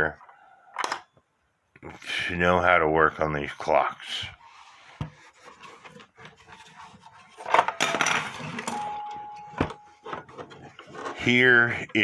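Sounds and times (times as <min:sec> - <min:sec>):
clattering rustle: 0:05.2 - 0:11.3
faint steady tone: 0:08.7 - 0:10.3.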